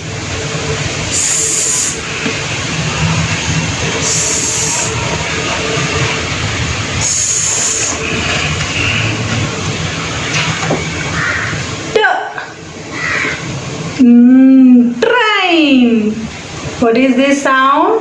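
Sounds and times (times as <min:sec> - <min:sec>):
steady background noise: 0:00.0 - 0:18.0
person making hissing sh sound: 0:01.1 - 0:02.1, 0:04.0 - 0:05.1, 0:07.0 - 0:08.6.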